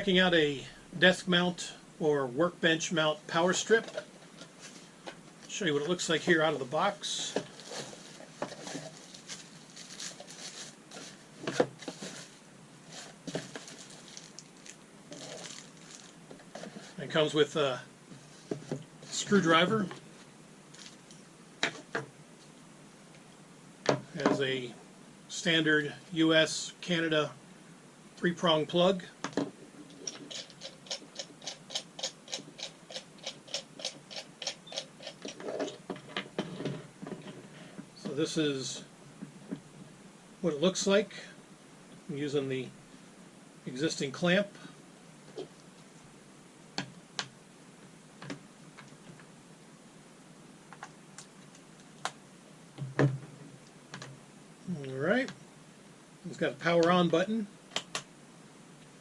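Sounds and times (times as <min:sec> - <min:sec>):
packaging rustling: 0:07.4 - 0:17.0.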